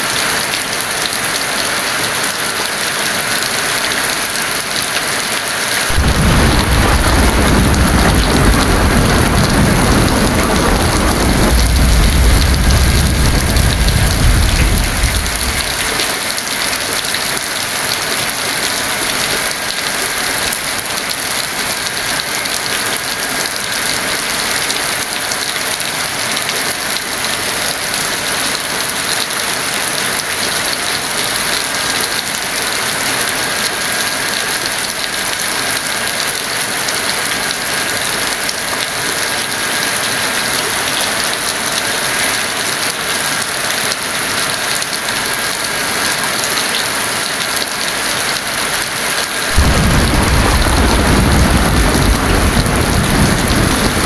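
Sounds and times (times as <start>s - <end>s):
heavy rain falling: 0.0s - 54.0s
thunder rumbling: 5.9s - 16.2s, 49.5s - 54.0s.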